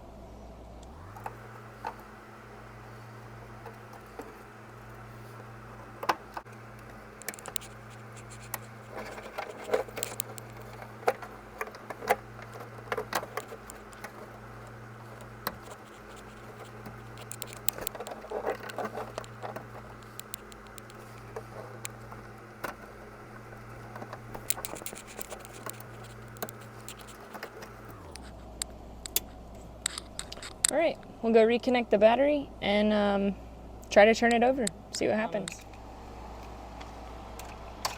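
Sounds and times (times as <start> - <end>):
steady low hum: 0.0 - 37.9
hand tools clicking and scraping: 0.9 - 29.3.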